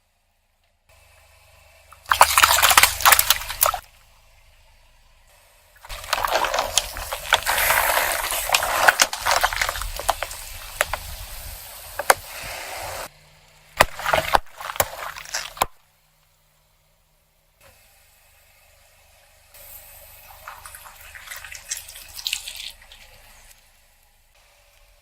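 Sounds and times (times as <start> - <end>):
wet sloshing and squelching: 1.9 - 3.8, 5.8 - 12.3, 13.8 - 15.8, 20.2 - 23.6
objects popping under car tyre: 2.0 - 3.8, 5.8 - 12.3, 13.8 - 15.8.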